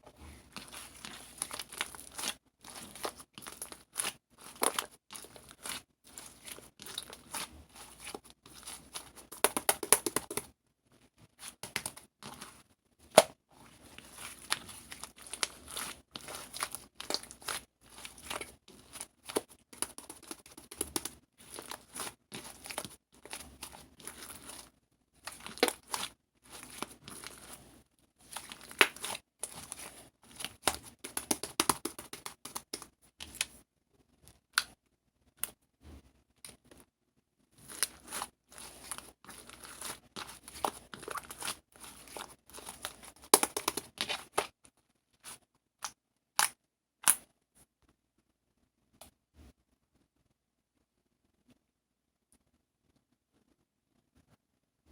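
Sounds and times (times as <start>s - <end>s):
thin material crinkling: 0.0s - 10.5s, 11.2s - 33.6s, 37.6s - 45.4s.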